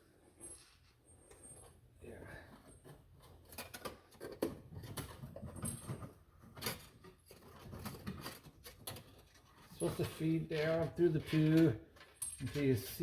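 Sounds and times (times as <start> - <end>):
metal wire scraping and clicking: 2.6 - 13.0.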